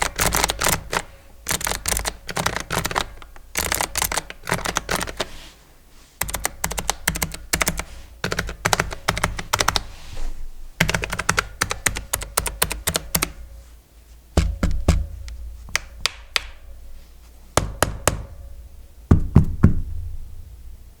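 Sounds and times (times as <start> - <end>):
keyboard typing: 0.0 - 5.4, 6.2 - 9.9, 10.8 - 13.4
heavy key strikes thudding: 14.4 - 16.4.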